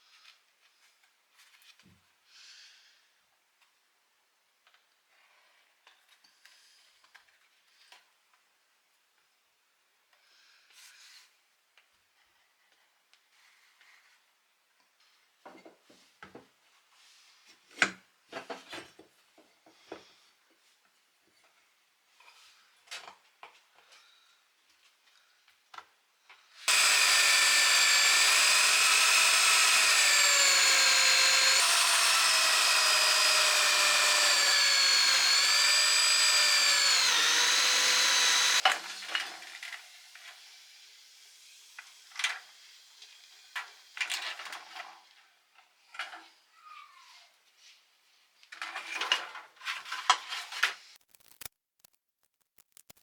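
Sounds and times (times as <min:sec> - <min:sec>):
high-speed power tool running: 0:26.7 - 0:38.6.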